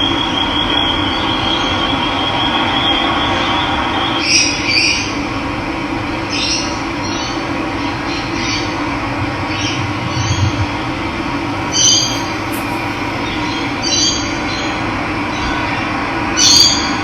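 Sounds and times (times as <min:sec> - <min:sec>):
birds chirping: 0:11.6 - 0:14.1.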